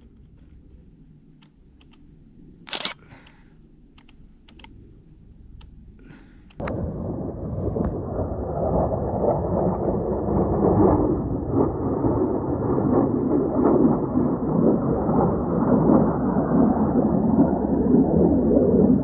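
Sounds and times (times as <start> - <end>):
low-flying jet roaring past: 6.6 - 19.0.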